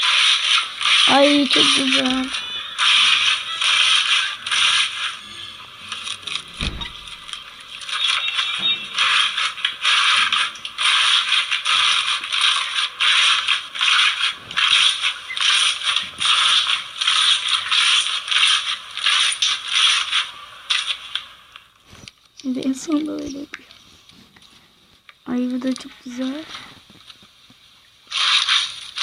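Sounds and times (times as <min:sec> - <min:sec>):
brief low thump: 0:06.6 - 0:07.1.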